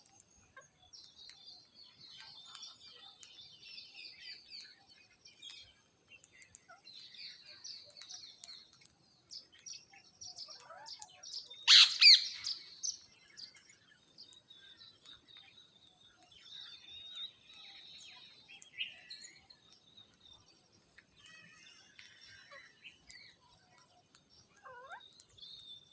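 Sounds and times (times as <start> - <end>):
parrots chirping and chattering: 4.1 - 25.9
parrot harsh screech: 11.7 - 12.4.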